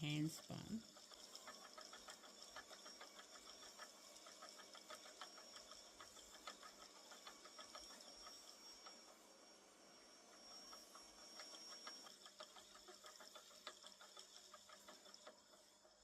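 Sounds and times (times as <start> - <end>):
spinning wheel clicking: 0.0 - 16.0.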